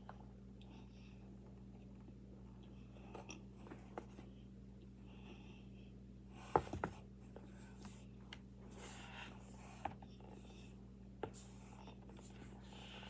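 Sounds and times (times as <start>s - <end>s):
steady low hum: 0.0s - 13.0s
soft rubbing and scratching: 6.3s - 13.0s.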